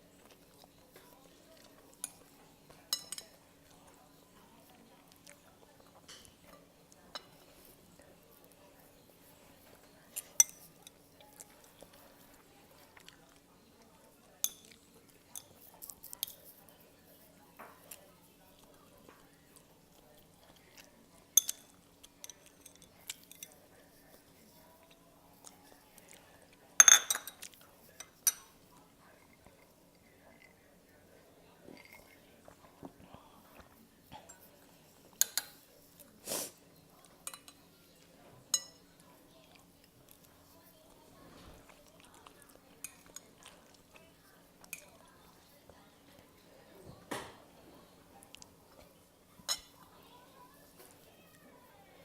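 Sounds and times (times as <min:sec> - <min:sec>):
soft chewing: 0:00.0 - 0:52.0
utensils clinking against a bowl: 0:00.5 - 0:31.0, 0:31.6 - 0:32.5, 0:33.7 - 0:36.2, 0:36.8 - 0:39.1, 0:41.3 - 0:45.4, 0:49.3 - 0:50.0.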